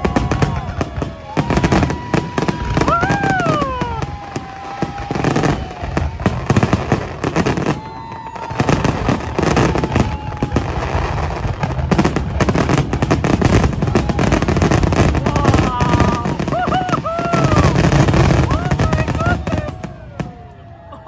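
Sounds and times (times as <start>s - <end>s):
fireworks crackling and popping: 0.0s - 20.9s.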